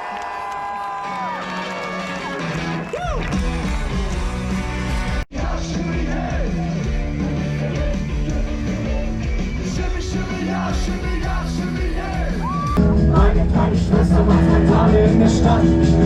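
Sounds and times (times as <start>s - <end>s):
live rock band: 1.1s - 16.0s
person singing: 5.4s - 16.0s.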